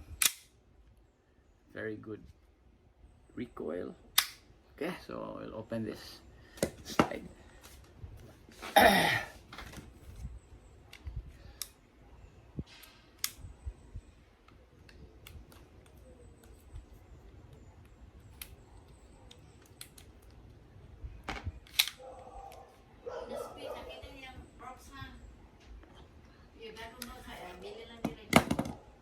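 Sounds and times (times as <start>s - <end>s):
pistol parts clicking and knocking: 0.2s - 0.6s, 4.1s - 4.5s, 21.3s - 22.6s.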